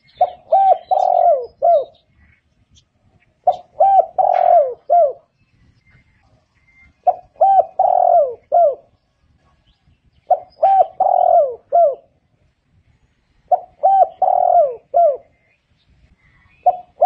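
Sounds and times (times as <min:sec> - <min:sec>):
dove cooing: 0:00.0 - 0:02.2, 0:03.4 - 0:05.3, 0:07.0 - 0:09.0, 0:10.3 - 0:12.2, 0:13.5 - 0:15.5, 0:16.2 - 0:17.0.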